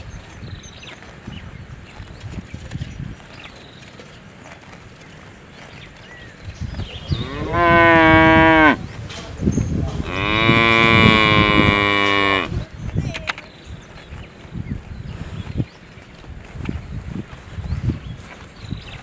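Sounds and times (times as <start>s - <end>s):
cow mooing: 7.1s - 8.8s, 10.0s - 12.6s.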